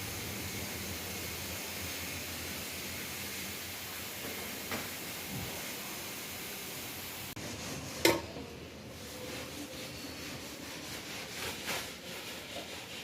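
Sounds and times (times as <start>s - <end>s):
steady hiss: 0.0s - 8.2s.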